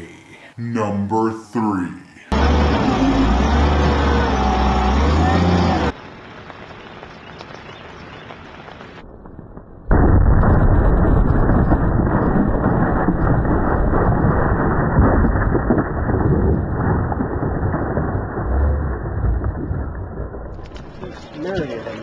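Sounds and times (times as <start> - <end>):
explosive blast: 9.1 - 20.4.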